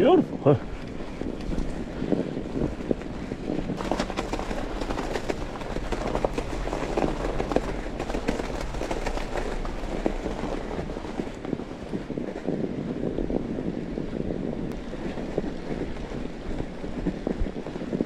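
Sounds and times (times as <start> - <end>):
tyres rumbling on snow: 0.0 - 18.0
clicks and crackles: 2.9 - 11.4.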